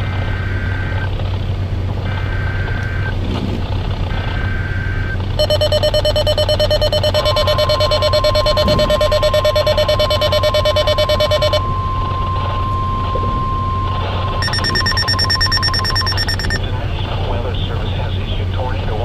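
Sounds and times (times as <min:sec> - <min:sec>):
steady warning tone: 0:04.0 - 0:17.4
pulsing alarm tone: 0:04.1 - 0:16.6
chirping data bursts: 0:04.2 - 0:16.6.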